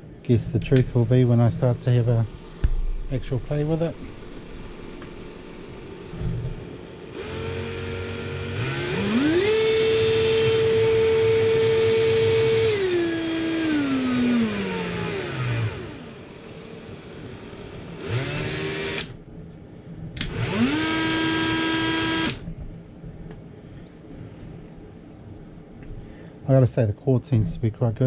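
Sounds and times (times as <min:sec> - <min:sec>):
rotary tool whining: 0:00.6 - 0:19.2, 0:20.2 - 0:22.5.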